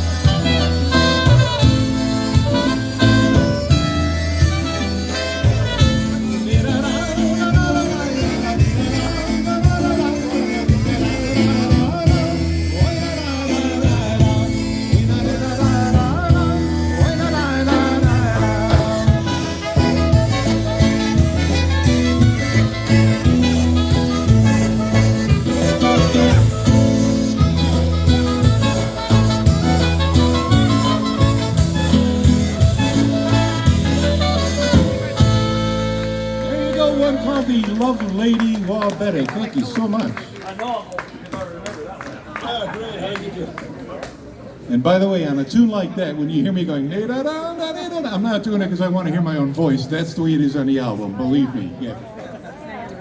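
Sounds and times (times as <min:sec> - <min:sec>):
polka band playing: 0:00.0 - 0:40.4.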